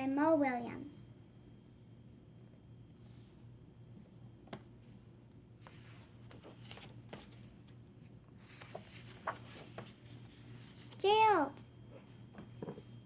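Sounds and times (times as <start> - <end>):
low steady hum: 0.0 - 13.0
picture book rustling: 3.0 - 11.3
soft taps on book: 4.4 - 4.7.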